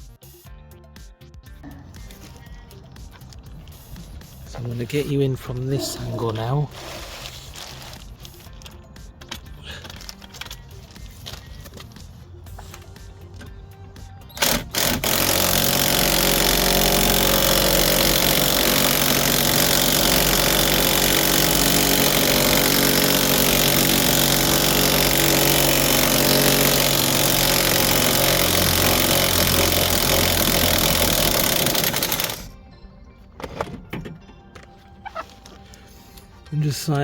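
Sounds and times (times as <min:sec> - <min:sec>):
impact wrench hammering: 0:14.4 - 0:32.5.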